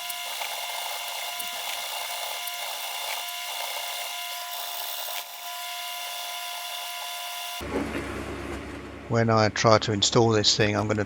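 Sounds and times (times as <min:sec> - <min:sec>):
workshop tool whining: 0:00.0 - 0:07.7.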